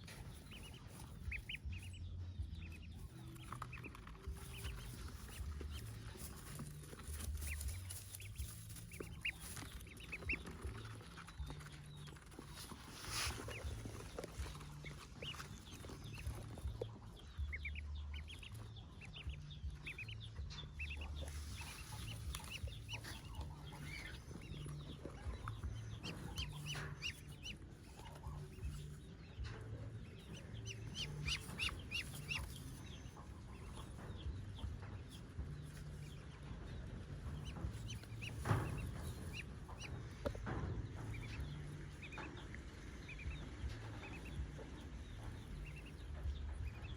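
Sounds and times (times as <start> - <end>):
ducklings peeping: 0.0 - 46.9
mother bird clucking: 0.0 - 46.9.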